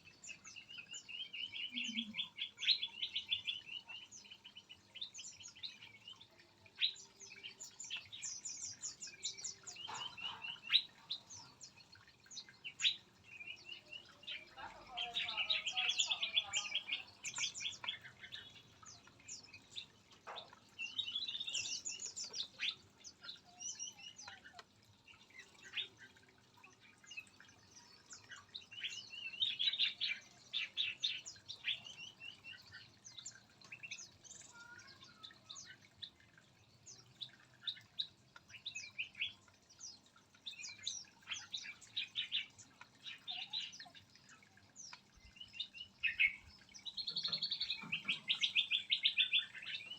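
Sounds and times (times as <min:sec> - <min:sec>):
songbirds chirping: 0:00.0 - 0:49.9.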